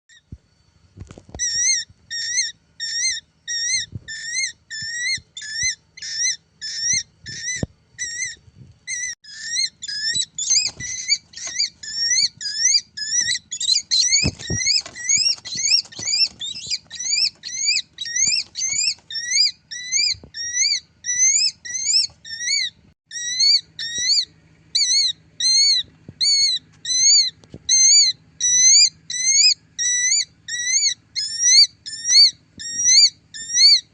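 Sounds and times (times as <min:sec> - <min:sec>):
bird whistling shrill calls: 0:01.4 - 0:33.9.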